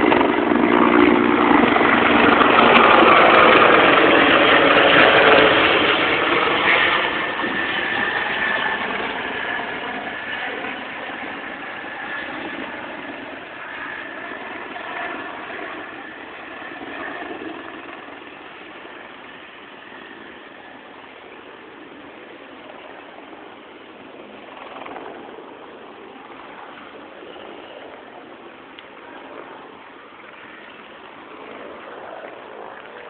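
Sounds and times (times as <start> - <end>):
helicopter engine and rotor: 0.0 - 33.0.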